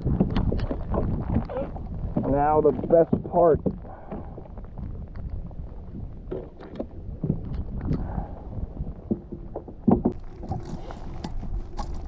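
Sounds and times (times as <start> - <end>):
knocks and thumps on kayak: 0.0 - 4.3, 9.0 - 12.0
wind rumble on microphone: 0.0 - 12.0.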